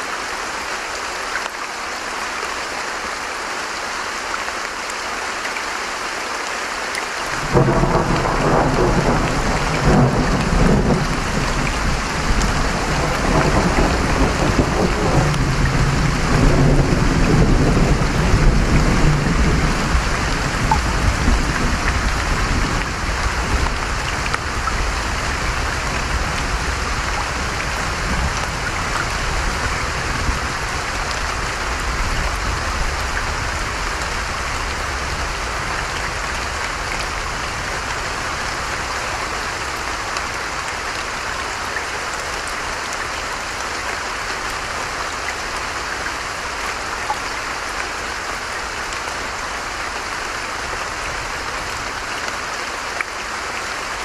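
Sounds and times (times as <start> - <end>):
rain and stream water hissing: 0.0 - 54.0
thunder rumble: 7.4 - 30.4.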